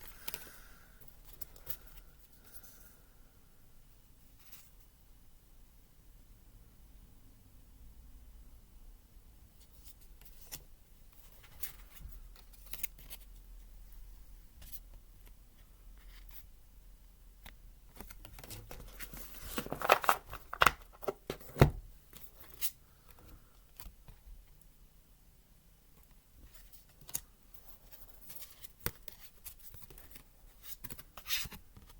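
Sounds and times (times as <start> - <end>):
cards tapping and clicking: 17.4 - 22.3
paper snapping and rustling: 19.4 - 21.7.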